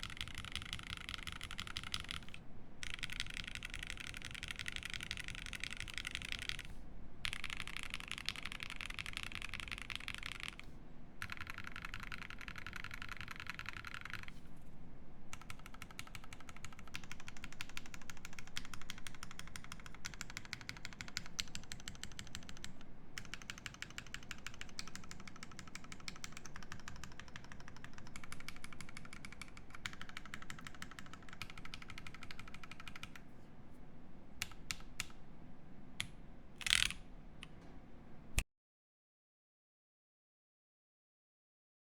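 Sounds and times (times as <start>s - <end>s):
mechanical keyboard typing: 0.0s - 10.6s, 11.2s - 14.4s, 15.3s - 33.3s, 36.0s - 37.0s.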